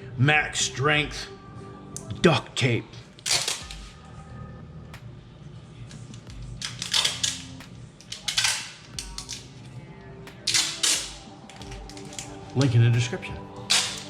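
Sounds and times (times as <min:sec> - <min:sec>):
duct tape ripping off roll: 0:03.2 - 0:04.0, 0:06.6 - 0:09.5, 0:10.4 - 0:12.7, 0:13.6 - 0:14.0.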